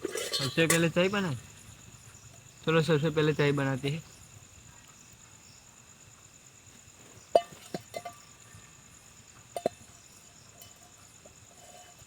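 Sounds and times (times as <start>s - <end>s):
metal cookware clinking: 0.0s - 1.1s, 7.4s - 8.3s
crickets trilling: 0.0s - 12.0s.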